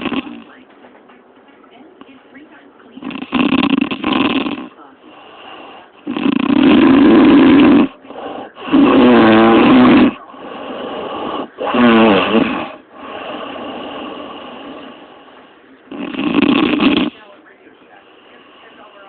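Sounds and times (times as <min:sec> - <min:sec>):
woman snoring: 0:00.0 - 0:00.6, 0:03.0 - 0:17.3
quiet breathing: 0:00.0 - 0:19.0.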